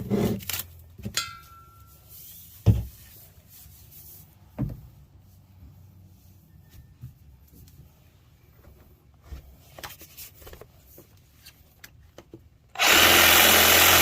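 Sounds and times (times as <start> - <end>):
light clink with ringing tone: 1.2 - 2.0
dull thumps: 4.5 - 5.0.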